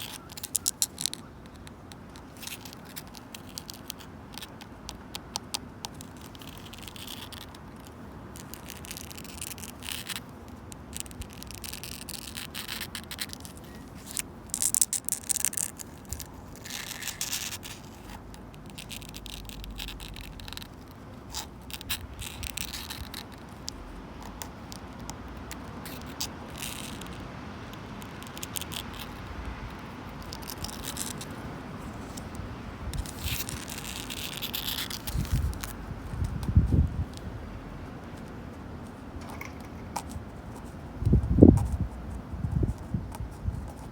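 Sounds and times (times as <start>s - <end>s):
wind rumble: 29.1s - 37.8s, 39.4s - 43.8s.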